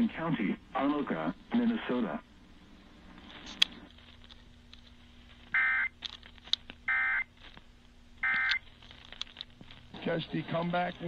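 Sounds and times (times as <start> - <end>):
radio hum and static: 0.0 - 4.4, 9.7 - 11.0.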